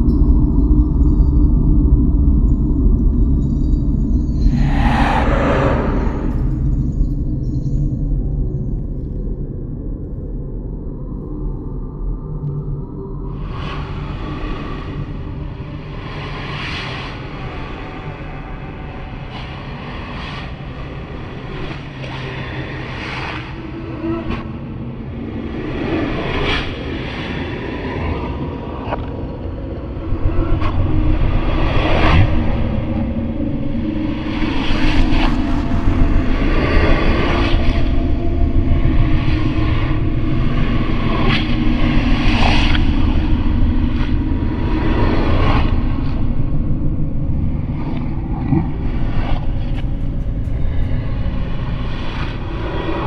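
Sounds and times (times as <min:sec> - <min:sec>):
low rumble: 0:00.0 - 0:16.5, 0:29.4 - 0:53.0
hissing wind gusts: 0:04.4 - 0:07.4.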